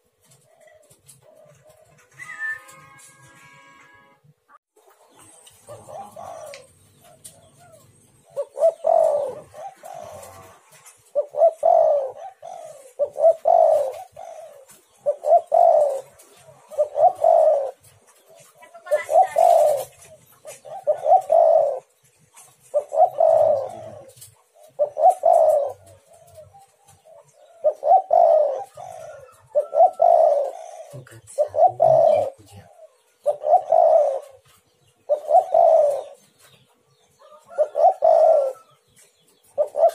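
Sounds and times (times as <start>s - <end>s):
dove cooing: 0.0s - 3.1s, 4.8s - 39.9s.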